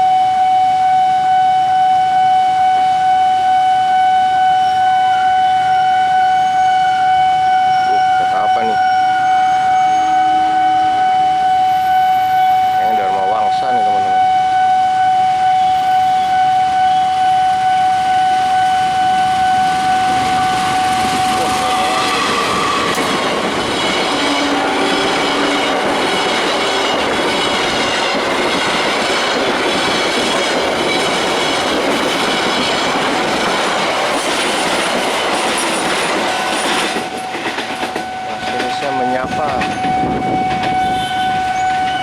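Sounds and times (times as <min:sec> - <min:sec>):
crossing alarm tone: 0:00.0 - 0:42.0
train wheels rumbling: 0:17.6 - 0:42.0
clickety-clack over rail joints: 0:20.5 - 0:41.1.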